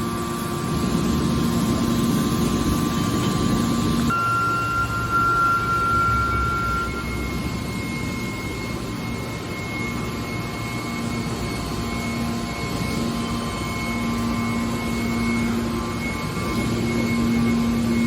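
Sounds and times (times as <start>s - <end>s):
baler machine humming: 0.0s - 18.0s.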